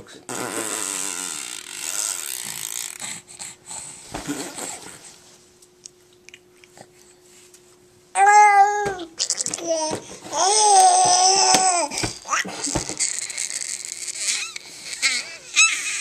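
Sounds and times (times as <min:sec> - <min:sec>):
faint steady hum: 0:00.0 - 0:16.0
baby blowing a raspberry: 0:00.3 - 0:03.2, 0:12.6 - 0:15.4.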